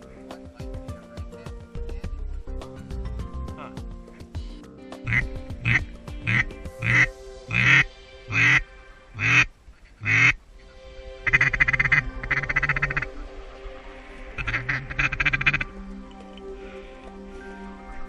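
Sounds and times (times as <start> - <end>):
faint background music: 0.0 - 18.0
duck quacking: 5.1 - 8.6, 9.2 - 10.4, 11.3 - 13.2, 14.4 - 15.7.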